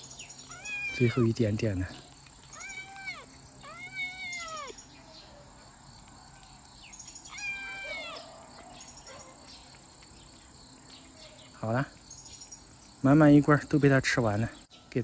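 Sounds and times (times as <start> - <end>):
kitten meowing: 0.5 - 1.4, 2.4 - 4.8, 7.3 - 8.4.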